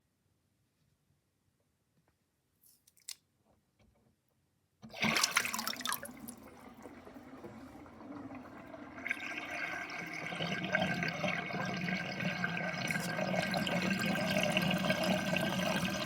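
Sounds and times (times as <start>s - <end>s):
water gurgling down sink drain: 4.9s - 16.0s.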